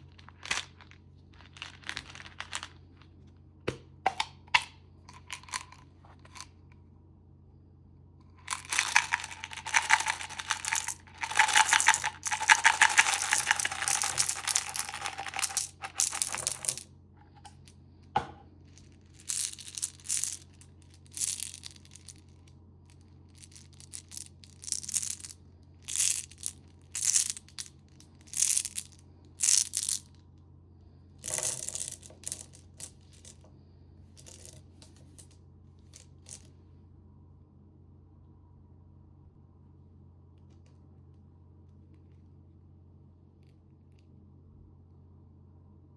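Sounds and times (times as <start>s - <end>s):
plastic packaging crinkling: 8.5s - 16.7s.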